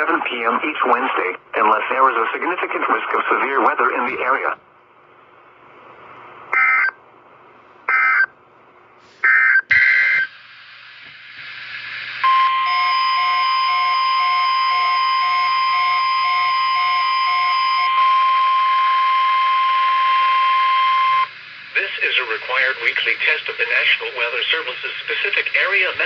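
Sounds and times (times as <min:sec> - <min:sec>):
steady warning alarm tone: 0:06.6 - 0:07.0, 0:07.9 - 0:08.3, 0:12.2 - 0:21.8.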